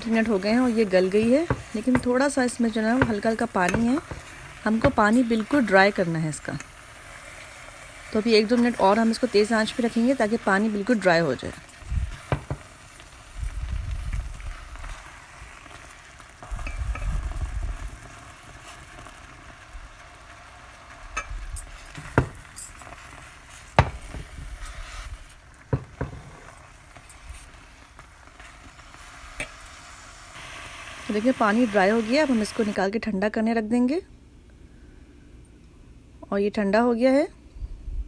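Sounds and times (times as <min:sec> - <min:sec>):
spoon stirring rumble: 0:00.0 - 0:19.5, 0:20.8 - 0:29.8
food sizzling in a pot: 0:00.0 - 0:33.0
spoon knocking against pot: 0:00.6 - 0:05.6, 0:12.3 - 0:12.6, 0:22.0 - 0:22.5, 0:23.8 - 0:24.3, 0:25.7 - 0:26.4.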